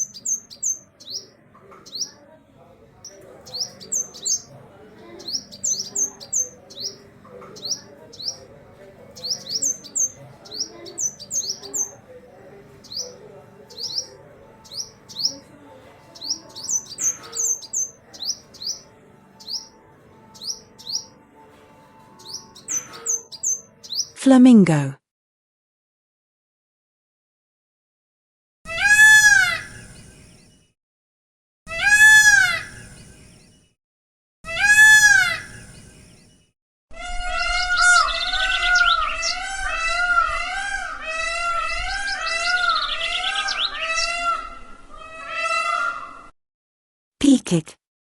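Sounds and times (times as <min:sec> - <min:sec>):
small birds chirping: 0:00.0 - 0:02.3, 0:03.0 - 0:21.2, 0:22.2 - 0:24.2, 0:37.4 - 0:40.2.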